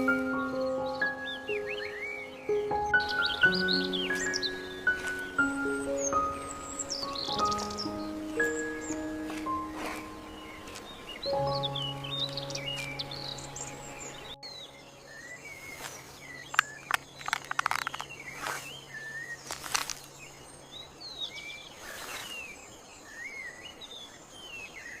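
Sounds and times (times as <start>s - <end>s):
low held music chord: 0.0s - 16.4s
small birds chirping: 0.0s - 25.0s
sharp clicks and crackles: 15.8s - 18.7s, 19.4s - 20.1s.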